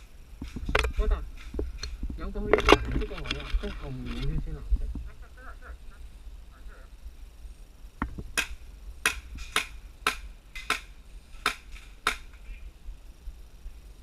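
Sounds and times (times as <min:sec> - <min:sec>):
airsoft gun firing shots: 0:08.4 - 0:12.4.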